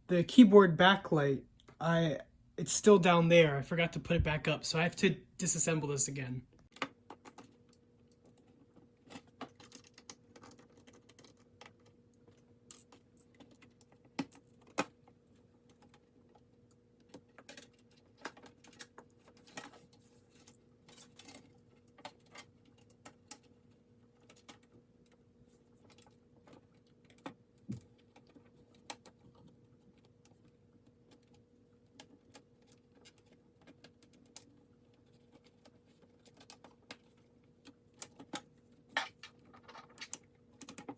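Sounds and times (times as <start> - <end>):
plastic laptop parts clicking: 31.1 - 40.9.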